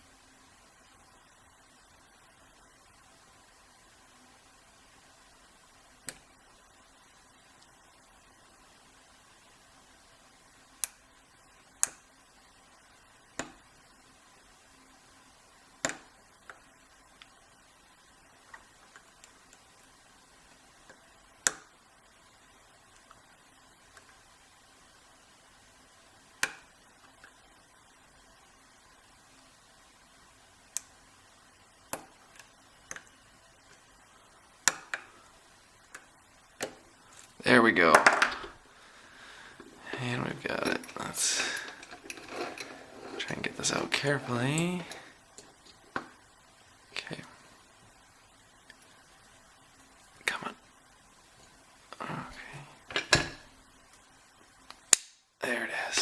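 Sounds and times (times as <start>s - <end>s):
lock pick clicks: 34.7s - 35.1s.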